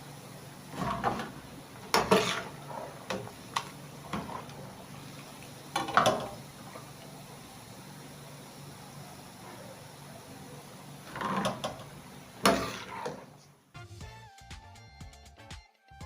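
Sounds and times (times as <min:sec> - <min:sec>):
utensil scraping cookware: 0:00.7 - 0:04.8, 0:11.0 - 0:13.5.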